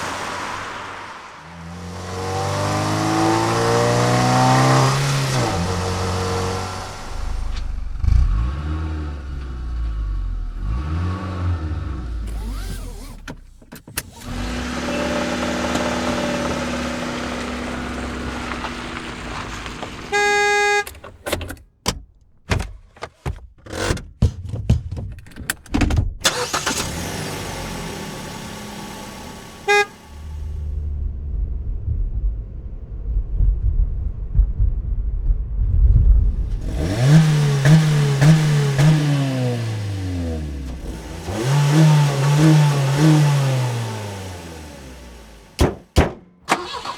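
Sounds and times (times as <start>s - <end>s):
engine revving: 0.0s - 13.3s, 14.0s - 20.8s, 26.2s - 32.5s, 36.4s - 45.6s
car driving: 0.0s - 21.4s, 26.2s - 45.6s
car horn: 14.4s - 21.1s, 29.2s - 30.8s
car interior clicks and knocks: 20.8s - 26.2s, 45.6s - 46.6s.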